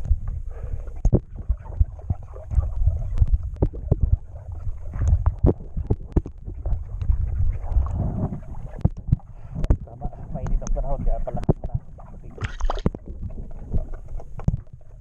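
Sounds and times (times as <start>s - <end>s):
low rumble: 0.0s - 15.0s
barnacles scraped off hull: 0.9s - 9.8s.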